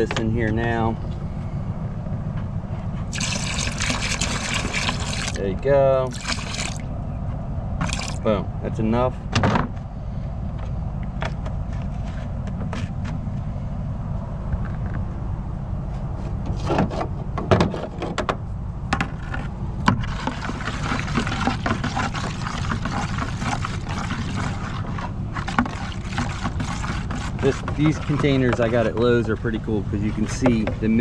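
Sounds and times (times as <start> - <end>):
engine running: 0.0 - 31.0
plastic container clattering: 19.0 - 29.3, 30.1 - 31.0.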